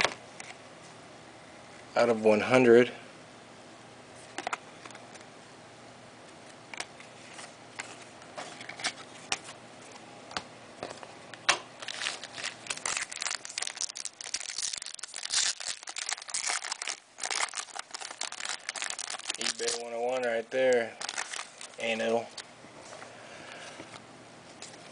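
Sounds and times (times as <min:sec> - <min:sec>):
plastic wrapper tearing: 0:11.8 - 0:22.2.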